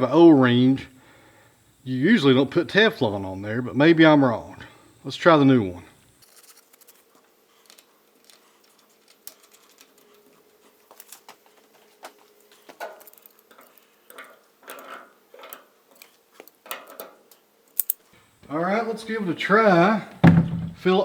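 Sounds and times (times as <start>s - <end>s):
faint steady hum: 0.0s - 21.0s
clicks of plastic parts handled: 7.6s - 10.2s, 12.0s - 18.1s.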